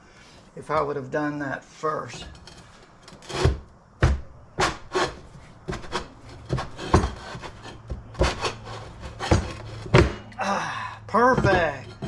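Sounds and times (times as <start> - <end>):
tire knocking and rubbing on rim: 2.2 - 10.4, 11.1 - 12.0.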